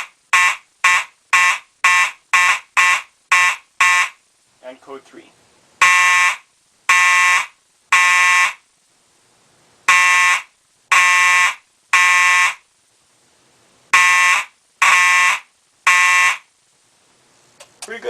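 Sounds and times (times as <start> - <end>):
fire alarm horn blasts: 0.3 - 4.2, 5.8 - 8.6, 9.9 - 12.6, 14.0 - 16.5.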